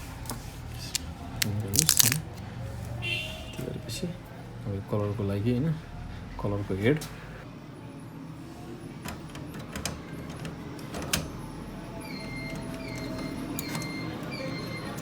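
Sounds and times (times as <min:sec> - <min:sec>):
plastic packaging handling: 0:00.6 - 0:02.3.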